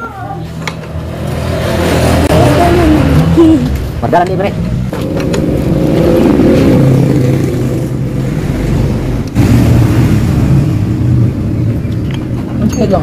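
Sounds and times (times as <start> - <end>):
raspy two-stroke engine revving: 1.0 - 3.7, 4.9 - 11.1.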